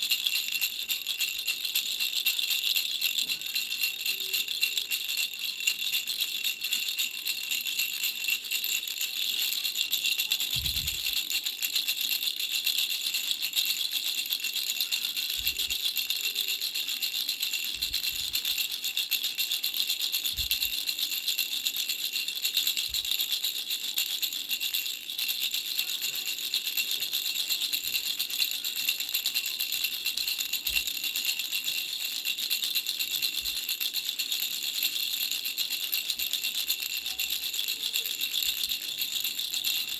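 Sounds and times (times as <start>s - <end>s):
bell rattle jingling: 0.0s - 39.9s.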